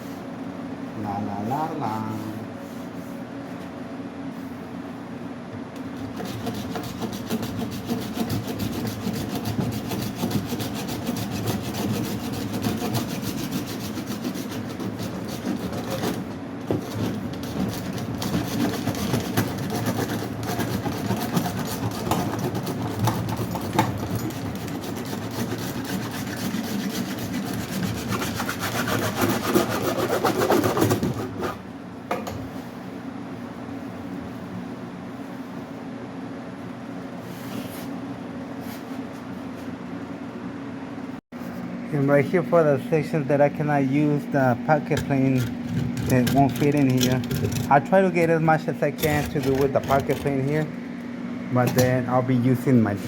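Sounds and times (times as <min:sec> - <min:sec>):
hand plane shaving wood: 0:06.1 - 0:31.6, 0:44.9 - 0:48.4, 0:49.0 - 0:50.7.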